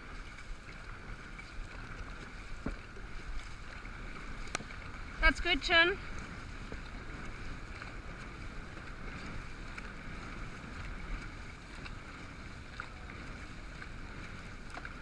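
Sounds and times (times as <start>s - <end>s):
water rushing and splashing: 0.0s - 15.0s
wind on microphone: 0.0s - 15.0s
faint ticks: 4.4s - 4.7s.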